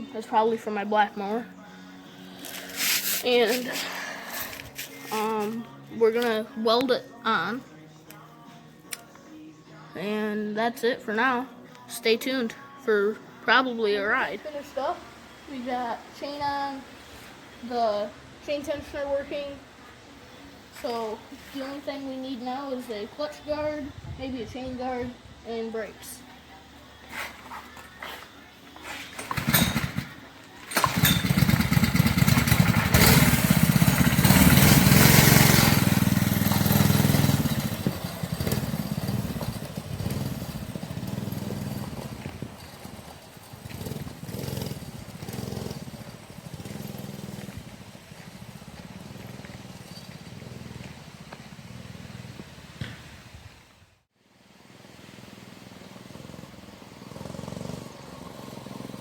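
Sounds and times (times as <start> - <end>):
mini bike engine running: 29.1 - 53.0, 55.2 - 59.0.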